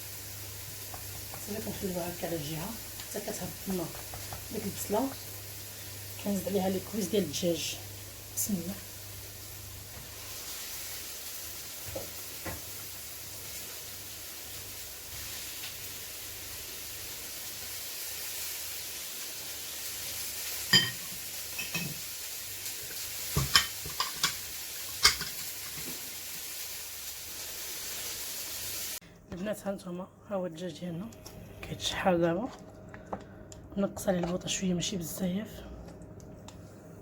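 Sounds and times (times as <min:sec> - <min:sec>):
chicken sizzling in hot oil: 0:00.0 - 0:29.0.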